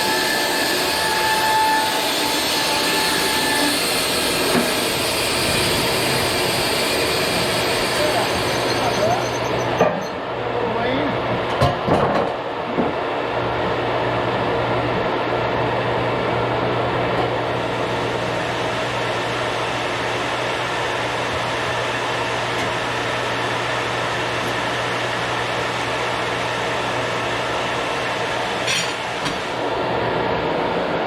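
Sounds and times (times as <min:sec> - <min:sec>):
bandsaw mill humming: 0:00.0 - 0:09.8, 0:20.4 - 0:30.0.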